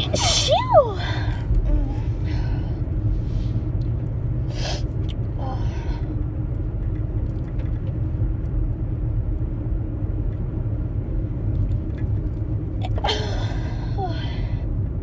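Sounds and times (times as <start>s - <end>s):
woman sneezing: 0.0s - 1.1s
steady low rumble: 0.0s - 15.0s.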